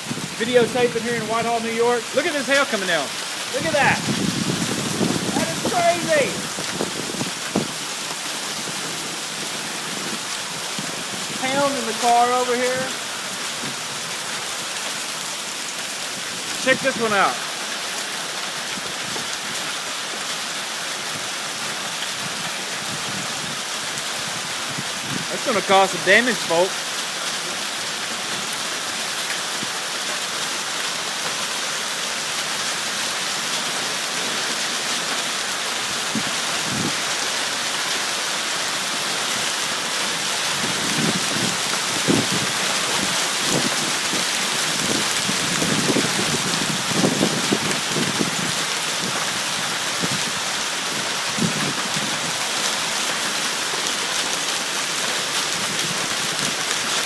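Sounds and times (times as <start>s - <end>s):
hail falling hard: 0.0s - 57.0s
hailstones thudding nearby: 1.6s - 15.1s, 32.7s - 57.0s.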